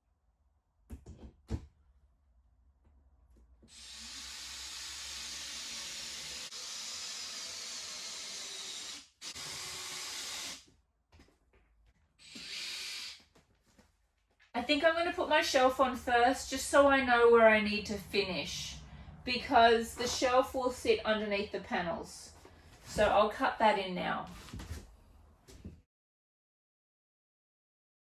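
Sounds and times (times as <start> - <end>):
power tool cutting plywood: 3.7 - 10.6.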